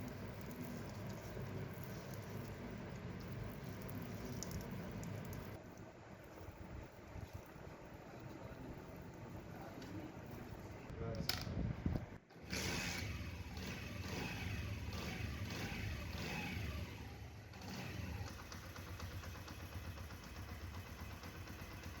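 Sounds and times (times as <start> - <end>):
motorcycle engine revving and idling: 12.3 - 22.0.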